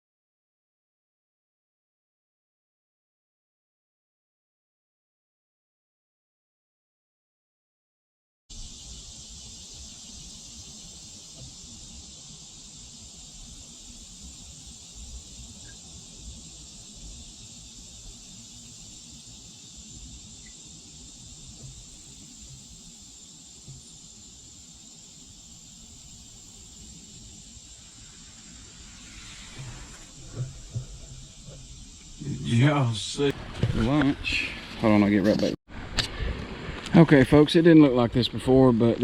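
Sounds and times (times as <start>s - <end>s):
shrill insect chorus: 8.5s - 35.1s.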